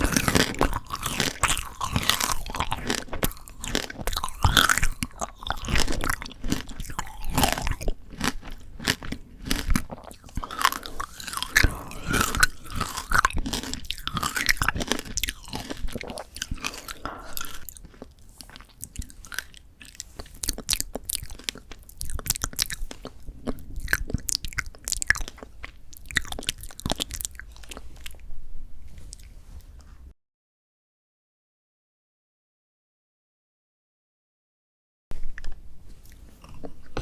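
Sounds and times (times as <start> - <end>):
candy shell crunching while chewing: 0.0 - 28.2.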